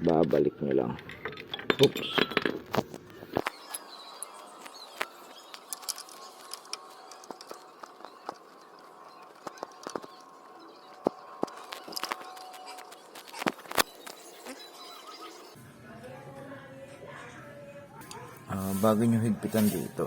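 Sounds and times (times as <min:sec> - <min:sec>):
metal parts clicking and tapping: 0:04.6 - 0:10.3, 0:11.0 - 0:14.2.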